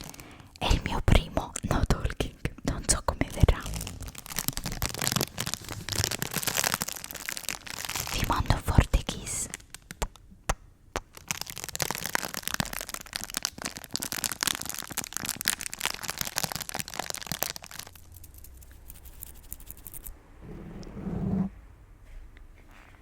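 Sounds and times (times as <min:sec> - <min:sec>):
paper being crumpled: 0:03.8 - 0:08.6.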